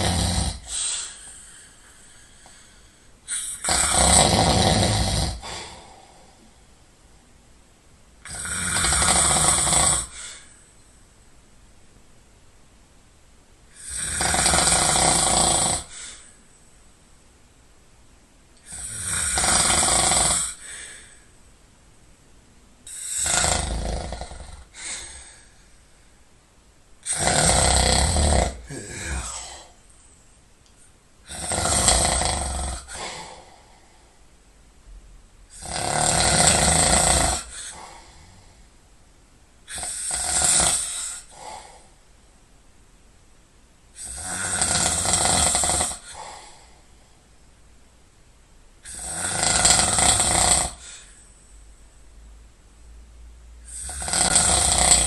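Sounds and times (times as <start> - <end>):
person snoring loudly: 0.0 - 1.2, 3.3 - 6.3, 8.2 - 10.5, 13.7 - 16.2, 18.6 - 21.1, 22.9 - 25.4, 27.0 - 29.8, 31.2 - 33.8, 35.5 - 38.5, 39.7 - 41.8, 44.0 - 46.7, 48.8 - 51.1, 53.6 - 55.0.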